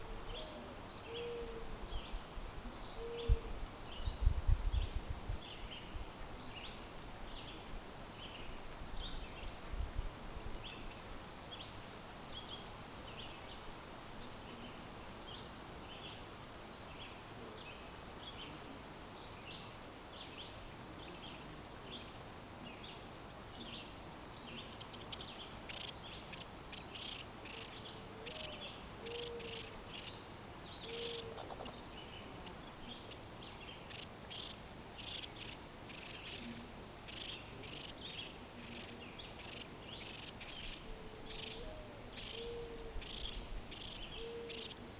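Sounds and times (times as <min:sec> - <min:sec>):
steady hiss: 0:00.0 - 0:44.9
crickets chirping: 0:24.6 - 0:31.4, 0:32.4 - 0:44.8.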